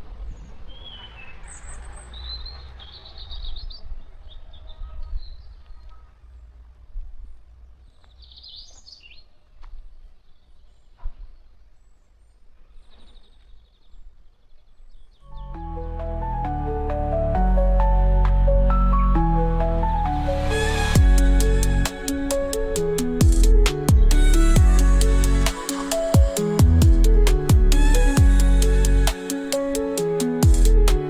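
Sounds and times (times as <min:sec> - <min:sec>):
small birds chirping: 0:07.3 - 0:15.6
low outdoor rumble: 0:15.3 - 0:25.6
music: 0:15.3 - 0:31.0.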